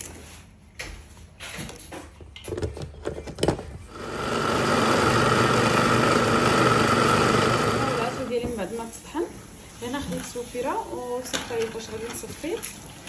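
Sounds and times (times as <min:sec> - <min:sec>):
countertop blender running: 0:03.9 - 0:08.6.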